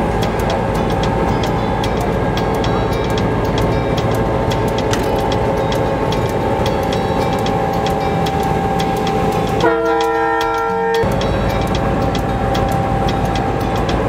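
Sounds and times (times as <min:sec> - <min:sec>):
train rumbling: 0:00.0 - 0:14.0
wheels clicking on rails: 0:00.0 - 0:14.0
train horn blast: 0:07.5 - 0:14.0.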